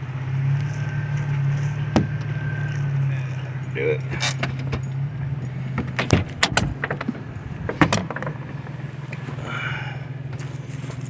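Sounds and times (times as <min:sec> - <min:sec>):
truck engine idling: 0:00.0 - 0:11.0
sharp knocks and clicks: 0:01.6 - 0:02.9, 0:04.2 - 0:09.3.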